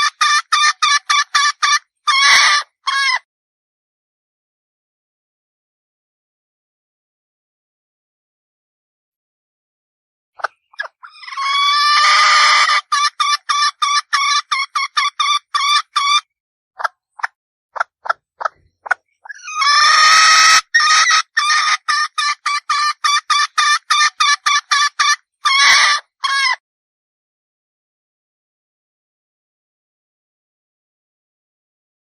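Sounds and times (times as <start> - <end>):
hen calling and clucking: 0.0 - 3.2, 10.4 - 26.6.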